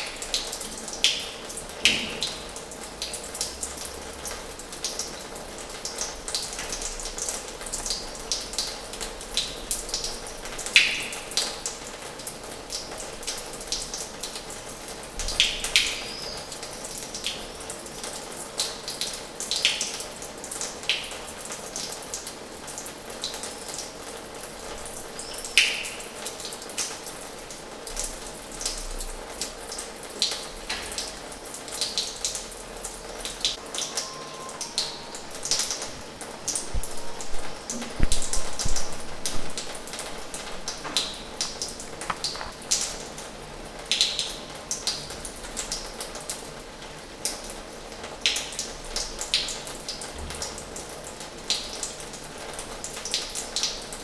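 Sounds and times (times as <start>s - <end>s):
water splashing from a tap: 0.0s - 46.4s
water drips and plops: 0.0s - 46.6s.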